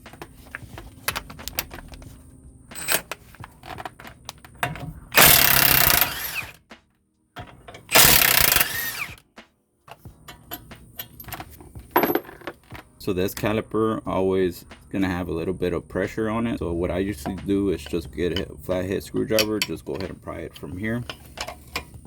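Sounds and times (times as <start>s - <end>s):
tool handling clicks and knocks: 0.0s - 2.1s, 2.7s - 6.8s, 7.4s - 9.2s, 9.9s - 12.9s, 17.1s - 22.0s
impact wrench hammering: 5.2s - 6.6s, 7.9s - 9.2s.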